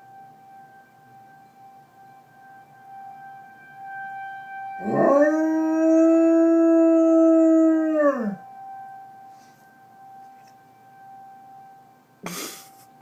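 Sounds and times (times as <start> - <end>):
faint steady tone: 0.0 - 13.0
dog howling: 4.8 - 8.4.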